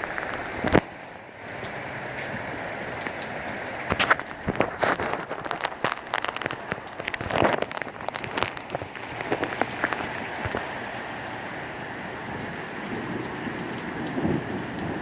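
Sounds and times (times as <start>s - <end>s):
heavy rain hiss: 0.0s - 15.0s
raindrops hitting hard surface: 0.0s - 15.0s.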